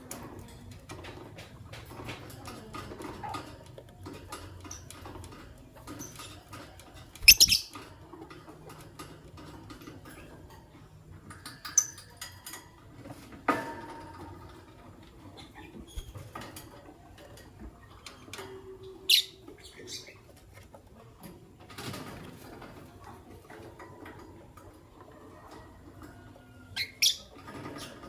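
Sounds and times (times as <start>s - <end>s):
birds clicking and scratching: 0.0s - 28.0s
shrill bird calls: 7.3s - 7.7s.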